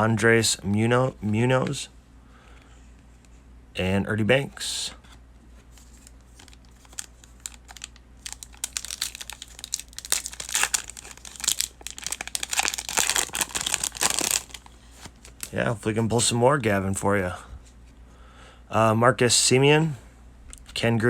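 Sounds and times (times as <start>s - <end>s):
plastic wrapper crinkling and tearing: 5.8s - 15.6s.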